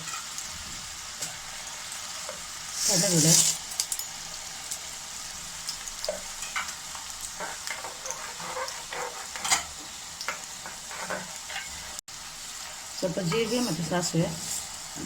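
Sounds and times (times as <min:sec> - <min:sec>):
nuts frying in hot oil: 0:00.0 - 0:15.0
crackles and clicks from stirring: 0:10.2 - 0:11.8.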